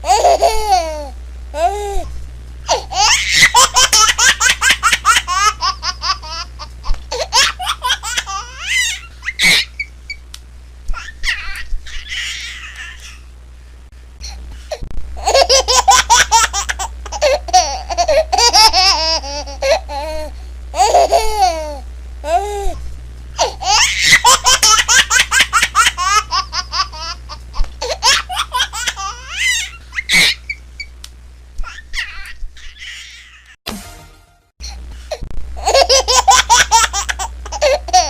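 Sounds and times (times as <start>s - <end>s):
baby laughing: 0.0s - 1.8s, 2.7s - 9.9s, 10.9s - 13.2s, 15.2s - 22.5s, 23.4s - 30.6s, 31.6s - 33.6s, 35.6s - 38.0s
low steady hum: 0.0s - 38.0s.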